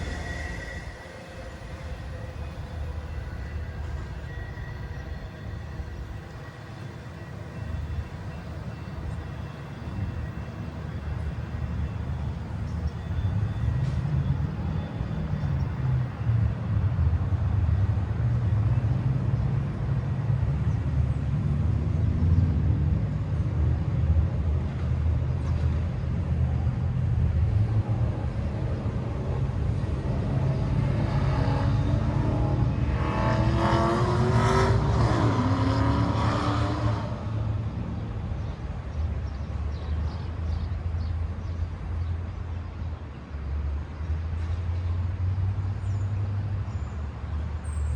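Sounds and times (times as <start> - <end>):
vehicle passing: 0.0 - 11.7
train rumbling: 0.0 - 47.9.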